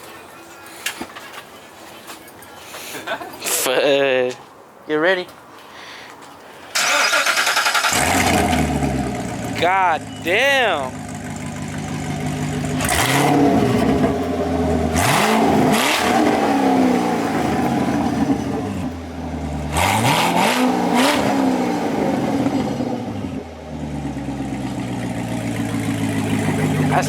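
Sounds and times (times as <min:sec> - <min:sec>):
car engine revving: 0:06.8 - 0:27.0.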